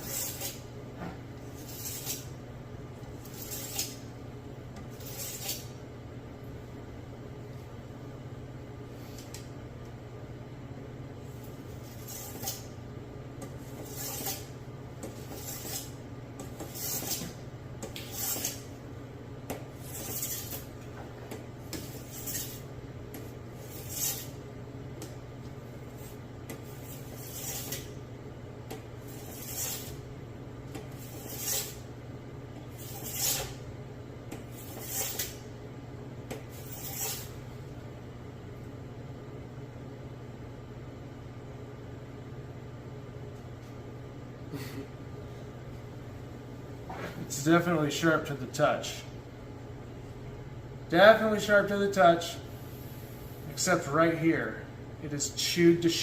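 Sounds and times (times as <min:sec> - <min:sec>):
sharpening stone scraping blade: 0:29.2 - 0:29.9, 0:31.0 - 0:31.8, 0:32.8 - 0:33.6, 0:36.6 - 0:37.3.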